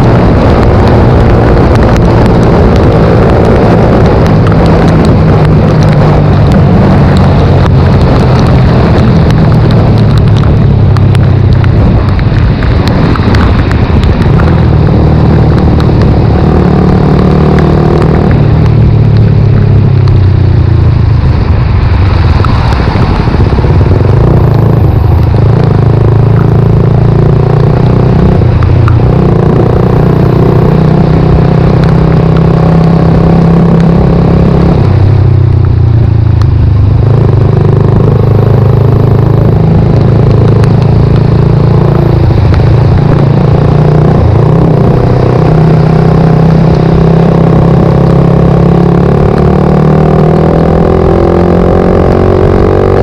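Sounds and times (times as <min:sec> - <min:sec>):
motorcycle engine revving: 0:00.0 - 0:53.0.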